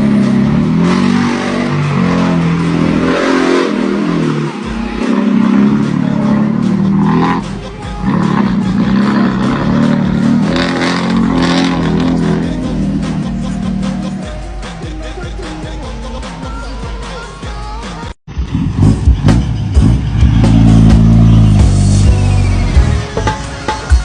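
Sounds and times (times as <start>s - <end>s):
truck diesel engine revving: 0.0s - 17.2s, 18.3s - 23.7s.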